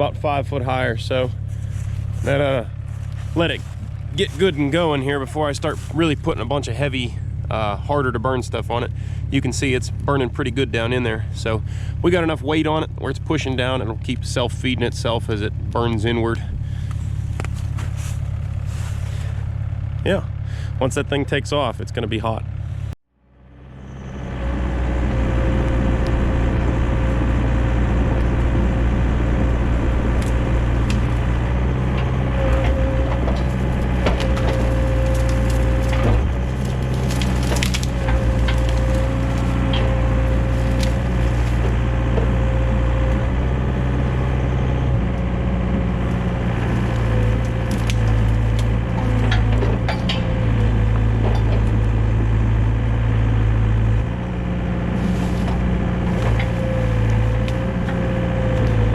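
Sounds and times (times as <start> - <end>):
excavator diesel engine running: 0.0 - 58.9
branches cracking and snapping: 1.4 - 5.0, 16.7 - 19.4, 25.0 - 58.9.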